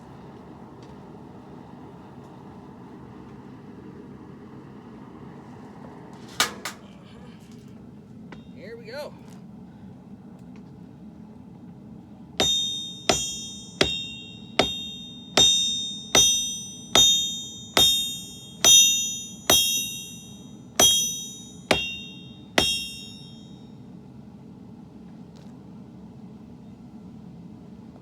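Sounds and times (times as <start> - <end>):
hammer striking steel: 6.4 - 6.8, 12.4 - 23.6.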